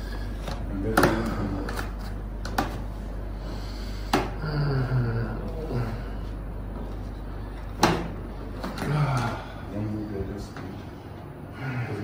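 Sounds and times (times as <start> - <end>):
man groaning in pain: 4.1 - 6.2, 8.8 - 9.7.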